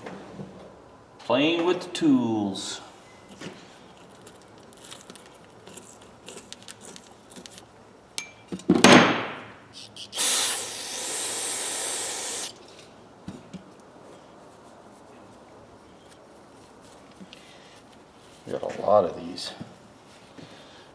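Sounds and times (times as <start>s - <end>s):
aerosol spray can hissing: 9.8s - 12.6s.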